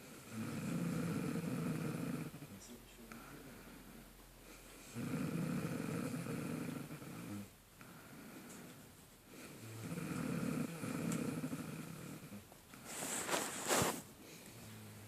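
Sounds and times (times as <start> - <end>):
woman snoring: 0.0 - 2.4, 4.9 - 7.6, 9.5 - 12.4.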